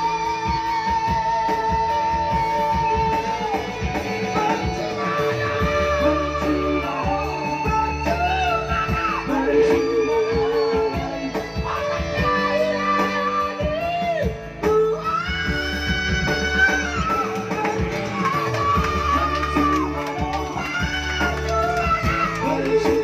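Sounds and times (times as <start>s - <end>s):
bass: 0.0s - 23.0s
guitar-led melody: 0.0s - 23.0s
steady beat: 13.6s - 23.0s.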